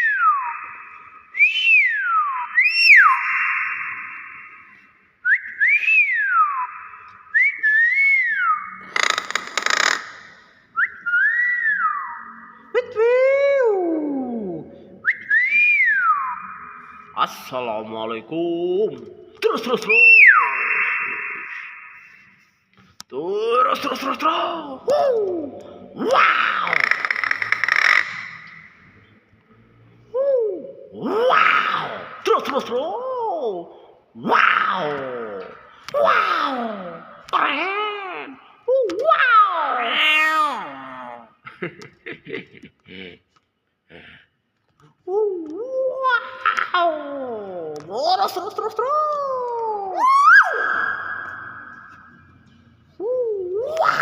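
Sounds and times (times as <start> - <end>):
myna whistling: 0.0 - 8.8, 15.0 - 17.2, 19.9 - 22.4.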